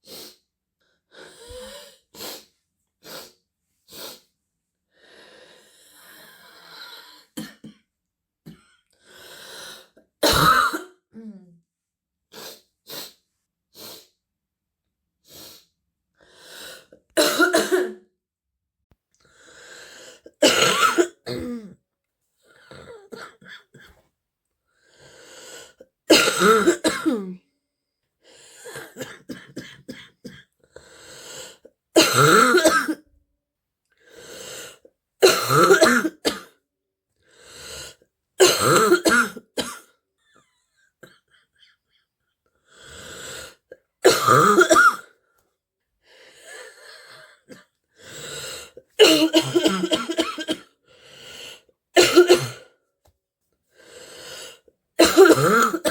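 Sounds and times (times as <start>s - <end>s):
breathing: 4.9s - 7.1s, 8.9s - 10.0s, 19.2s - 20.3s, 24.7s - 25.8s, 27.8s - 28.7s, 30.6s - 31.7s, 33.9s - 34.9s, 37.2s - 38.0s, 42.6s - 43.7s, 46.0s - 48.8s, 50.8s - 51.7s, 53.7s - 54.7s
girl coughing deeply: 10.2s - 11.1s, 17.2s - 18.0s, 20.4s - 21.7s, 26.1s - 27.4s, 32.0s - 33.0s, 35.2s - 36.6s, 38.4s - 39.9s, 44.0s - 45.1s, 49.0s - 50.7s, 52.0s - 52.7s, 55.0s - 55.9s.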